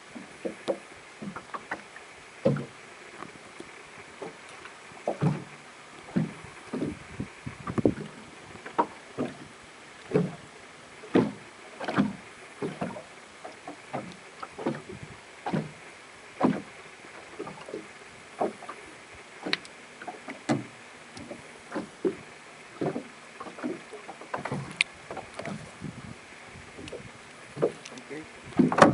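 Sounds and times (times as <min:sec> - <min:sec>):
small waves lapping: 0:00.0 - 0:28.9.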